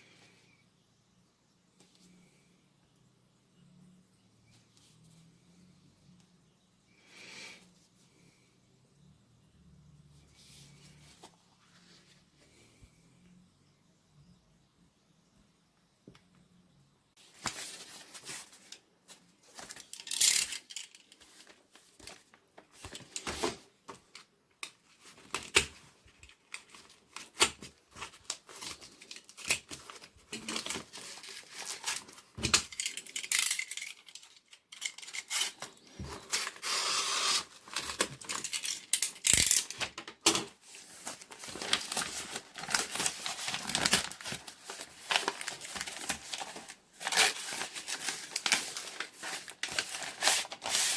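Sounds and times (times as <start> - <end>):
packaging tearing and crinkling: 40.9 - 50.9.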